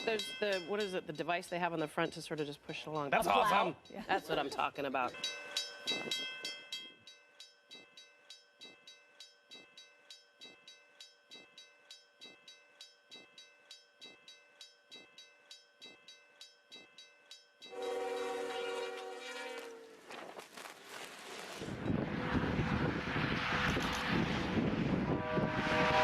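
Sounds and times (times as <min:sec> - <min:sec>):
train air horn: 0:17.7 - 0:20.1, 0:25.0 - 0:26.0.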